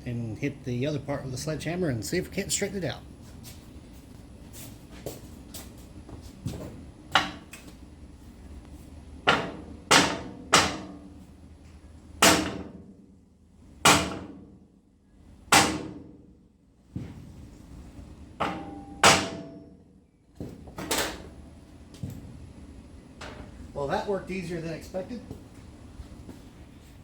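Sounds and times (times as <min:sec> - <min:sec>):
sledgehammer striking metal: 0:12.2 - 0:12.8, 0:13.9 - 0:14.4, 0:18.4 - 0:19.7.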